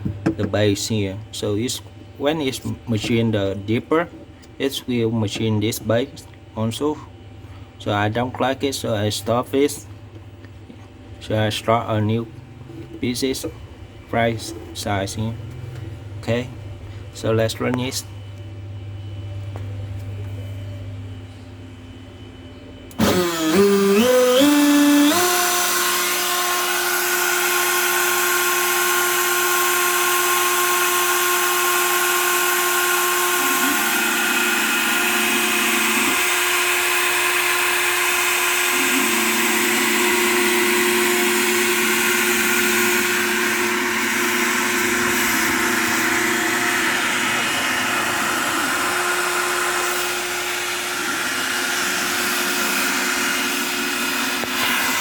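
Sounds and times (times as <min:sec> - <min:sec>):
router spindle whine: 0:22.3 - 0:55.0.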